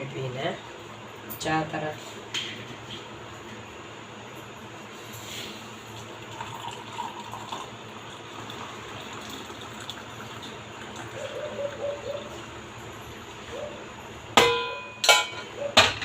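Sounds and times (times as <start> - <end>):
liquid running: 5.8 - 13.0.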